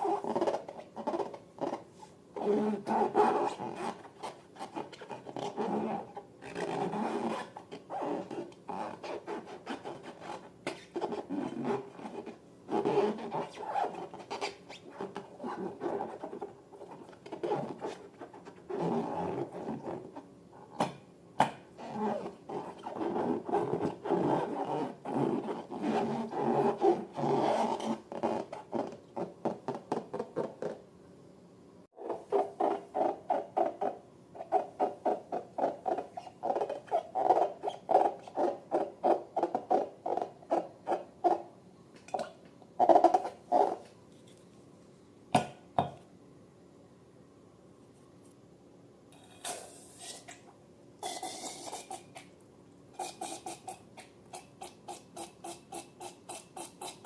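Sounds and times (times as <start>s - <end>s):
balloon rubbing squeaks: 0.0s - 20.2s, 21.8s - 30.8s, 32.0s - 41.5s, 42.8s - 43.9s, 53.0s - 57.0s.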